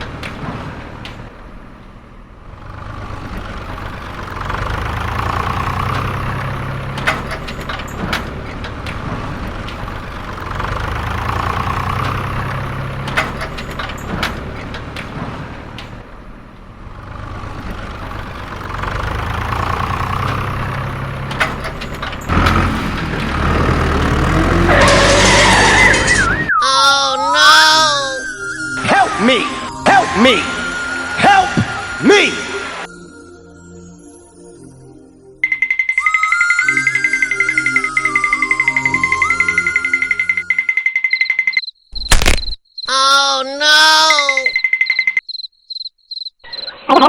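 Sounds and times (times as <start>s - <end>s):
tractor engine running: 0.0s - 26.6s, 35.4s - 42.4s
noisy burst with whistle-like tone: 25.6s - 26.9s, 27.8s - 32.9s, 35.9s - 40.1s
scattered clicks: 44.2s - 45.3s.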